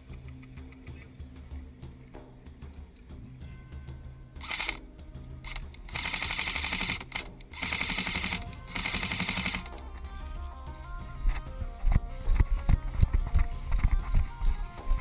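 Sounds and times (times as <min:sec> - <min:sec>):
airsoft gun firing bursts: 0:04.4 - 0:04.8, 0:05.4 - 0:09.9.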